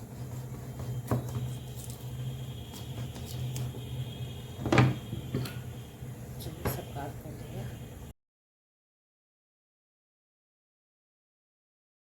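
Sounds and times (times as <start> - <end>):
steady low hum: 0.0 - 8.1.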